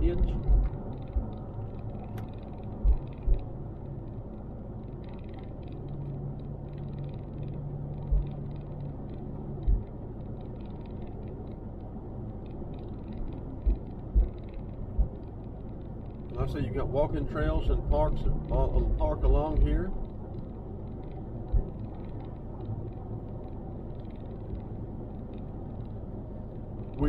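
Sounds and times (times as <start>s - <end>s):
short low thumps: 0.0s - 1.3s, 2.2s - 3.5s
car engine and tyre rumble: 0.0s - 27.0s
hum: 0.0s - 27.0s.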